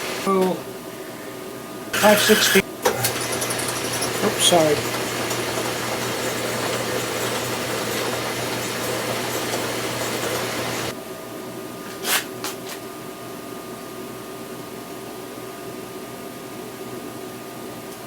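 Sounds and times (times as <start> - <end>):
drilling machine humming: 0.0 - 0.3, 2.0 - 10.9.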